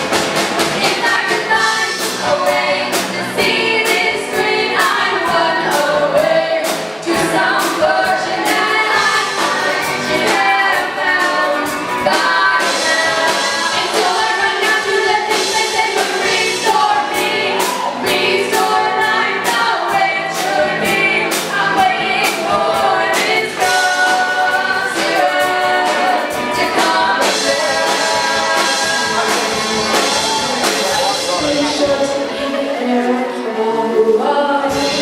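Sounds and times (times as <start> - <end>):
drum and cymbal hits: 0.0 - 32.2
rock band playing: 0.0 - 33.7, 34.7 - 35.0
voices singing together: 0.0 - 35.0.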